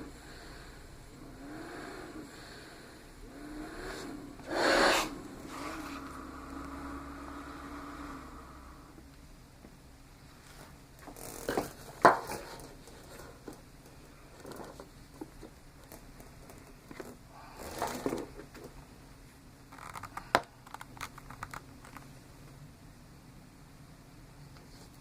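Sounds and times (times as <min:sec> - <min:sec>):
rustling and scratching: 0:10.4 - 0:18.8.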